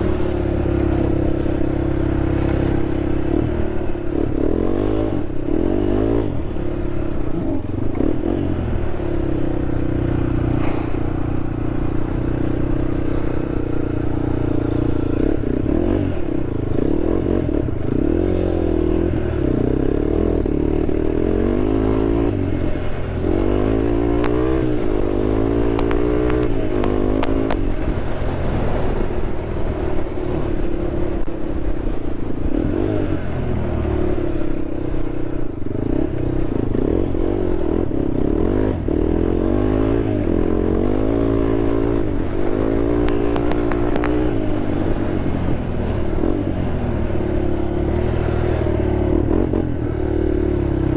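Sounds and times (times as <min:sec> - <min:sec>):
quad engine revving: 0:00.0 - 0:50.9.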